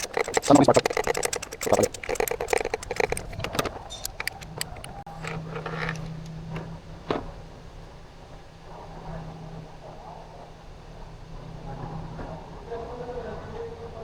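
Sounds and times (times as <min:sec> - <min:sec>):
metallic clinks of tools: 0:00.0 - 0:06.2
sharp click: 0:00.0 - 0:06.3.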